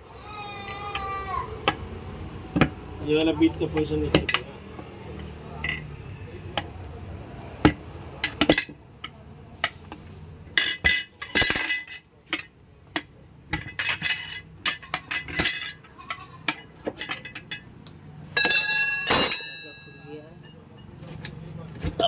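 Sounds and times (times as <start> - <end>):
tyre levers clinking on wheel rim: 7.6 - 17.7, 18.4 - 22.0.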